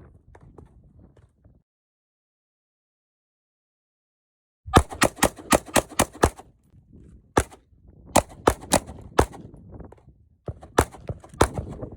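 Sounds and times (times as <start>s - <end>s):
rifle shots: 4.8s - 6.4s, 7.4s - 7.6s, 8.2s - 9.4s, 10.7s - 11.8s.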